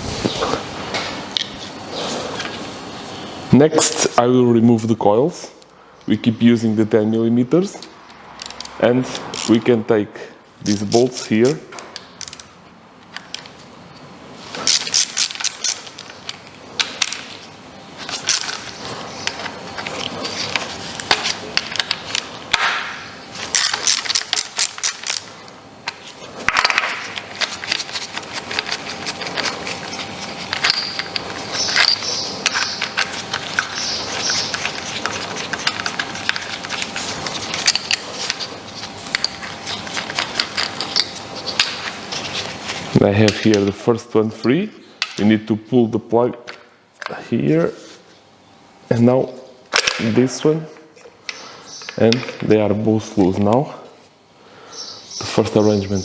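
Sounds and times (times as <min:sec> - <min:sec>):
ratchet wrench clicking: 0:08.4 - 0:09.6, 0:12.2 - 0:12.5
metal scrapes and clinks: 0:27.3 - 0:42.4.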